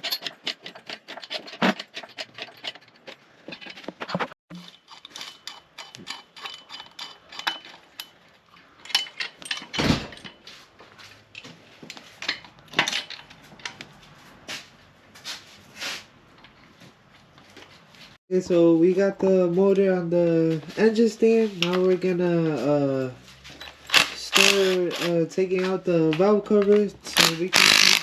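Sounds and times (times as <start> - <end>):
metal tools clinking: 0.0 - 10.6, 11.2 - 13.8, 22.6 - 28.0.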